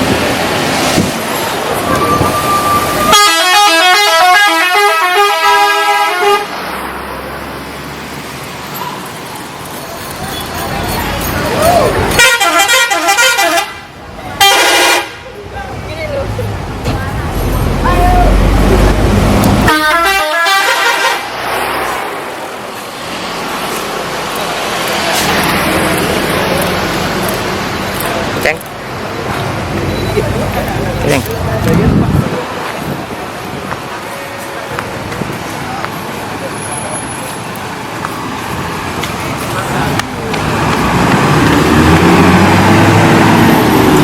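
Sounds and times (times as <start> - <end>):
street noise: 0.0 - 44.0
multi-tone bus horn tune: 2.8 - 6.6, 12.1 - 15.4, 19.6 - 21.3.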